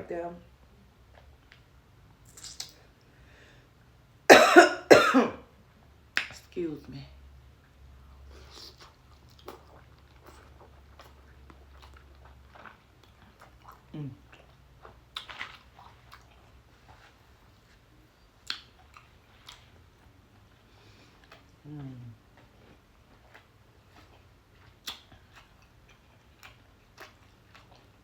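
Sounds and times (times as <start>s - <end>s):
person chewing wetly: 8.0s - 17.2s, 18.4s - 28.0s
lip smacks: 18.4s - 19.7s, 23.2s - 27.9s.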